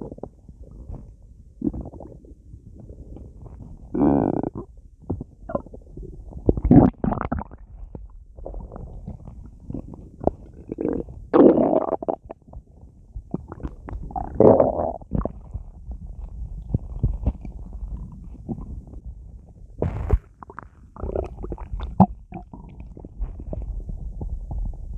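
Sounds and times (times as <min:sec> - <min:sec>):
stomach gurgling and rumbling: 0:00.0 - 0:24.9.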